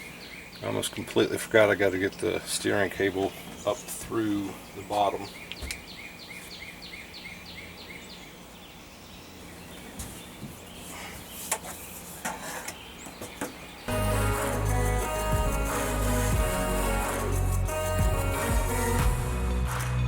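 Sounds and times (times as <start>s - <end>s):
bird chirping: 0.0s - 19.4s
background music: 13.9s - 20.0s.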